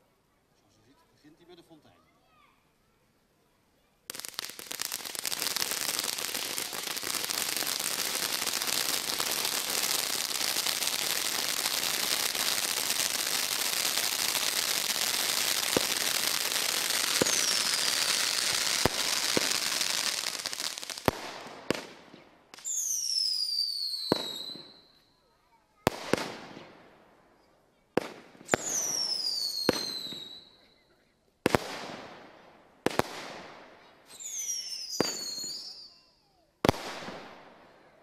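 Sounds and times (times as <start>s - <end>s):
firework sharp cracks: 4.1s - 24.9s, 25.8s - 27.2s, 28.0s - 30.6s, 31.4s - 35.8s, 36.6s - 38.0s
firework hissing crackle: 4.1s - 25.0s, 25.8s - 27.0s, 28.0s - 30.6s, 31.4s - 36.0s, 36.6s - 37.8s
firework falling whistles: 4.2s - 21.2s, 22.6s - 25.1s, 28.5s - 30.7s, 34.0s - 37.2s.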